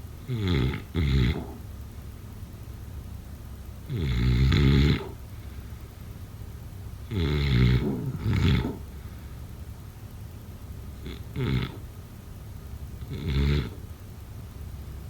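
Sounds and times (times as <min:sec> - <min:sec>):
snoring: 0:00.2 - 0:01.6, 0:03.9 - 0:05.2, 0:07.1 - 0:09.0, 0:11.0 - 0:11.8, 0:13.0 - 0:13.8.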